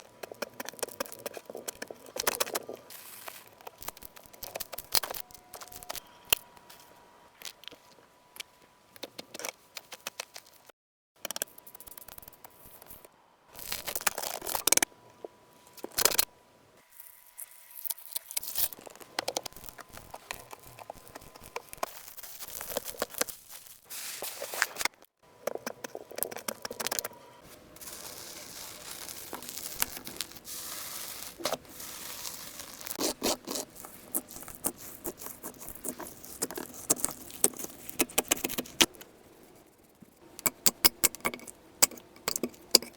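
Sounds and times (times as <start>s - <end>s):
slime crackling and scraping: 0.0s - 6.4s, 17.0s - 40.0s.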